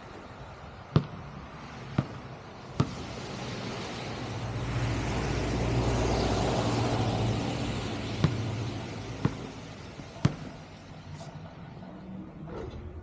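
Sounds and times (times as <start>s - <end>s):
basketball bouncing on pavement: 0.1s - 3.6s, 7.0s - 11.0s
car driving past: 3.5s - 9.6s.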